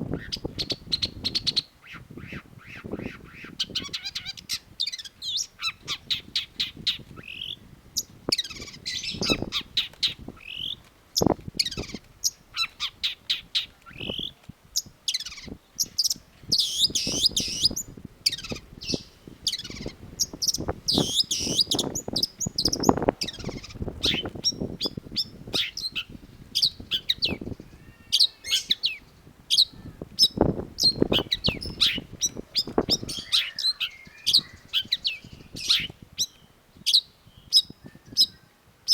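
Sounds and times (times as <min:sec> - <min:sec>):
bird singing chirps and whistles: 0:08.4 - 0:10.8, 0:15.1 - 0:38.5.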